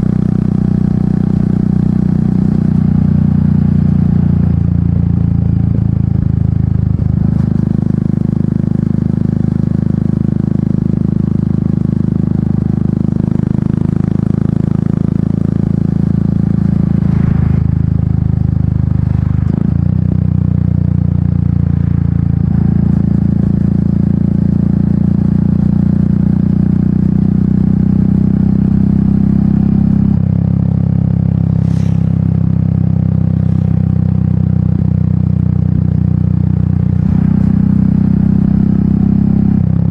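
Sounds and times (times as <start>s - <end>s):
motorcycle engine thumping: 14.8s - 24.5s, 30.3s - 38.8s.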